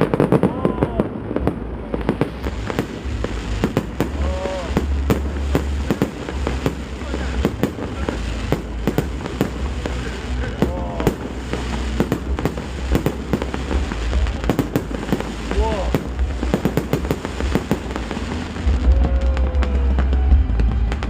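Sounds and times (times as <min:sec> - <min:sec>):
continuous low boom: 0:00.0 - 0:21.0
fireworks bangs and crackles: 0:00.0 - 0:21.0.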